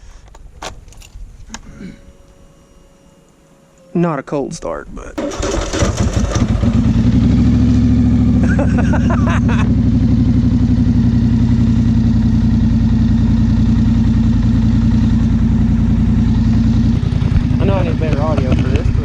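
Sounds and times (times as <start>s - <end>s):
atv engine starting and idling: 5.2s - 19.0s.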